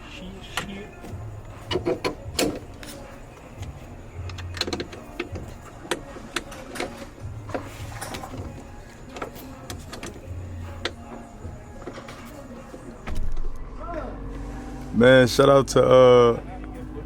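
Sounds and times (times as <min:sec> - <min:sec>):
clicks and knocks of hardware: 0:03.6 - 0:11.0.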